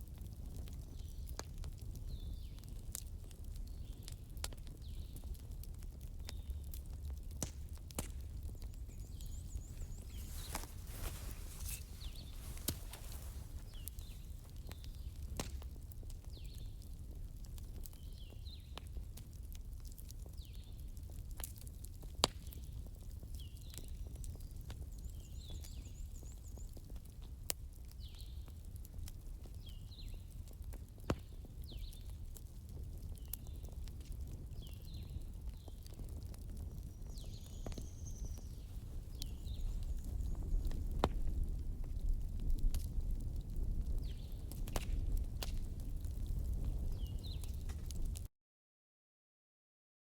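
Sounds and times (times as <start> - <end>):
campfire crackling and popping: 0.0 - 25.7, 26.5 - 48.3
bird chirping: 8.6 - 14.4.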